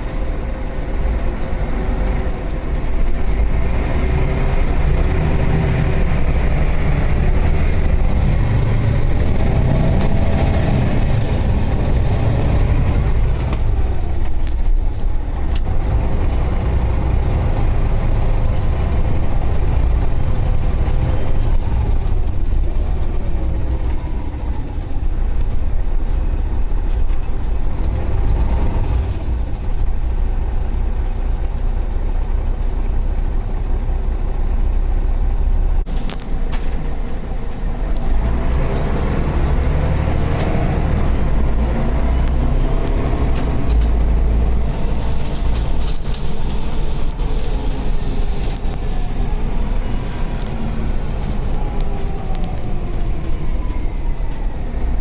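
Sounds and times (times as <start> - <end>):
bus engine and road rumble: 0.0 - 55.0
sharp rattles: 41.3 - 54.6.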